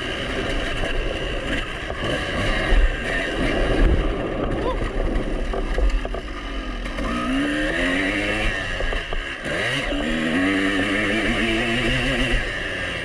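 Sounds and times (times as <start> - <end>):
two-stroke engine revving: 0.0 - 13.0
wind noise on microphone: 0.2 - 7.4.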